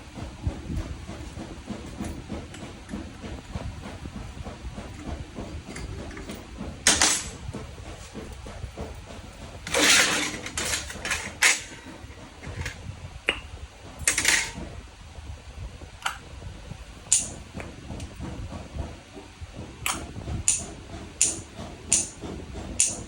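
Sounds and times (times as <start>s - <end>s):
metal tools clinking and clattering: 9.7s - 11.9s.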